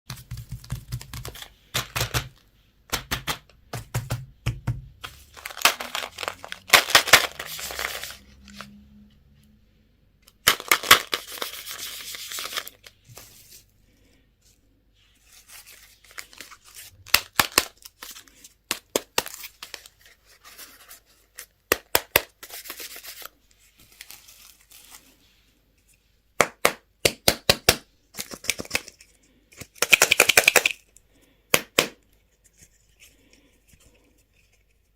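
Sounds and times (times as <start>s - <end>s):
wrappers tearing and crinkling: 5.3s - 8.5s.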